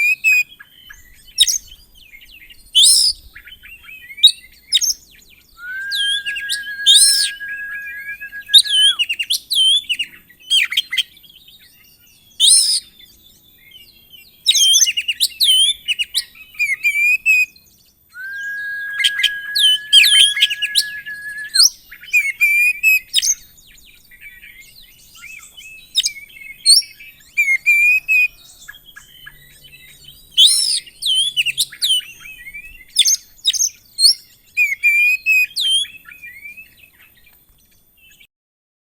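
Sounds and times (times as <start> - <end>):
bird singing varied song: 4.8 - 9.0, 17.8 - 21.7
bird holding whistled note: 5.6 - 9.0, 18.2 - 21.7.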